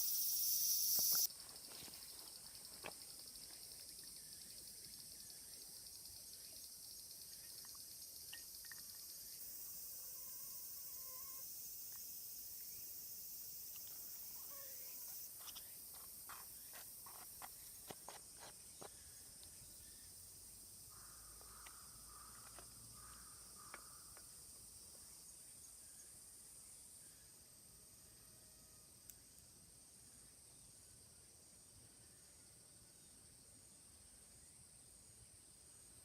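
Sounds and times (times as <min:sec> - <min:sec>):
insects buzzing: 0:00.0 - 0:30.8.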